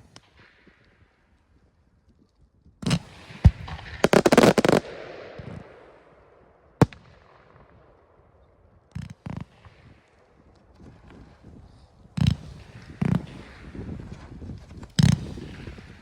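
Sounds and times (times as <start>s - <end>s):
fireworks bangs with crackle: 2.8s - 6.1s, 12.2s - 16.0s.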